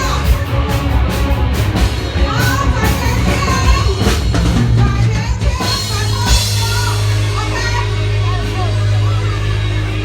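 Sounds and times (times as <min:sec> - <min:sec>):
orchestra playing: 0:00.0 - 0:05.2
drum beats: 0:00.0 - 0:10.0
low bass line: 0:00.0 - 0:10.0.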